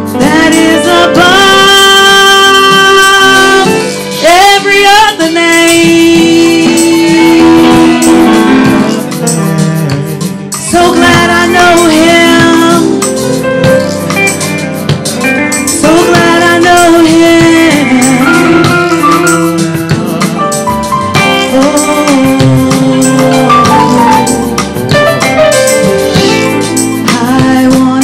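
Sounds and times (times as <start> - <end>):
guitar accompaniment: 0.0 - 28.0
long held sliding vocal notes: 1.6 - 13.0, 21.5 - 27.7.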